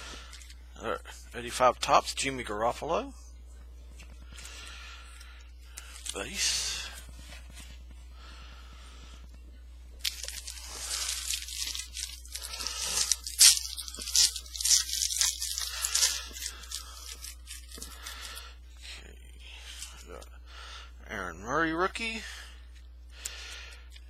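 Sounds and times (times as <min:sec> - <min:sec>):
foil wrapper tearing and crinkling: 0:10.0 - 0:18.4.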